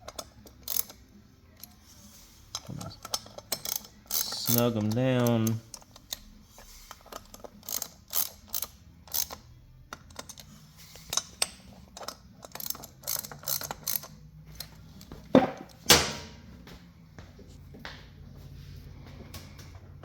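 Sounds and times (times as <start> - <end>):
hand ratchet clicking: 0.0 - 1.8, 2.5 - 6.3, 6.9 - 15.1.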